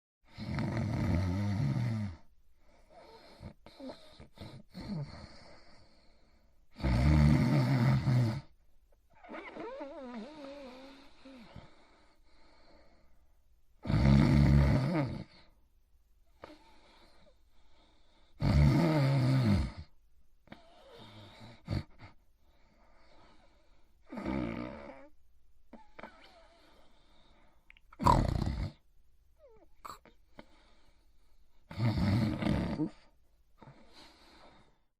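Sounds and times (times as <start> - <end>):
loud rasping snores: 0.3 - 2.3, 2.9 - 6.0, 6.7 - 8.5, 9.2 - 12.0, 13.8 - 15.6, 16.4 - 19.9, 20.5 - 25.1, 28.0 - 28.8, 31.7 - 34.8
faint breathing: 2.5 - 6.7, 10.2 - 13.4, 16.2 - 18.4, 20.5 - 24.1, 25.0 - 27.8, 29.4 - 31.7, 32.9 - 34.9.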